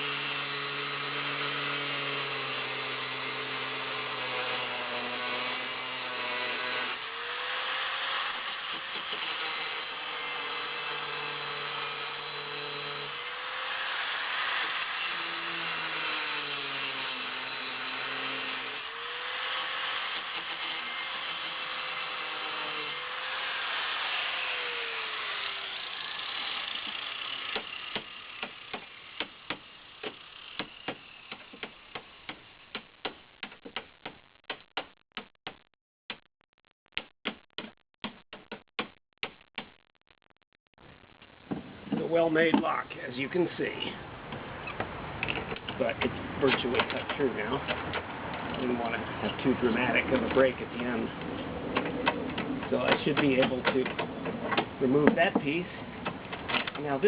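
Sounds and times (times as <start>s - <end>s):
angle grinder cutting steel: 0.0s - 31.5s.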